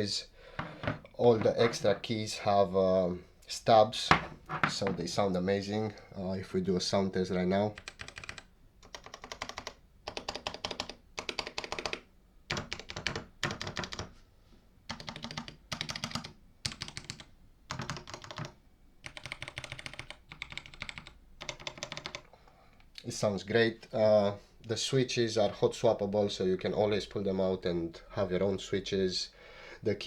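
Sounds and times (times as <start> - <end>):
mechanical keyboard typing: 7.8 - 14.1, 14.9 - 22.3.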